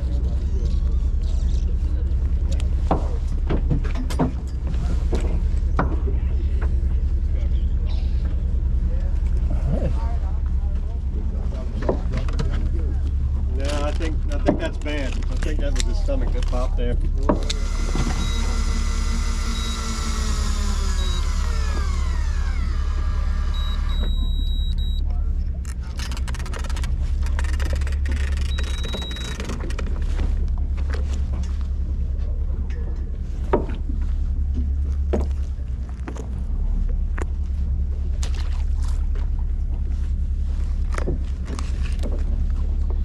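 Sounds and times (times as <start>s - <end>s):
boat engine droning: 0.0s - 43.0s.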